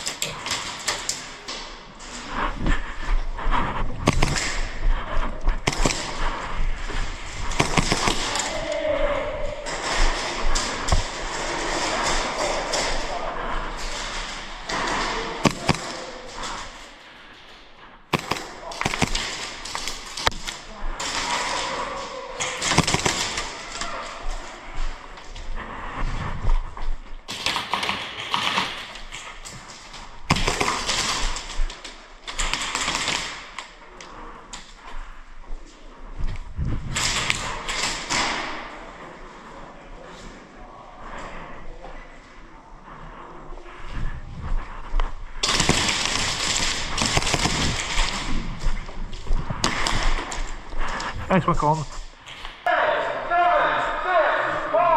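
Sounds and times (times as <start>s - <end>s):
pellets smacking surfaces: 0.0s - 25.8s, 26.6s - 34.9s, 36.8s - 39.1s, 45.4s - 52.7s
airsoft guns firing bursts: 3.6s - 8.9s, 9.6s - 16.9s, 18.1s - 23.8s, 27.3s - 33.8s, 45.4s - 48.8s.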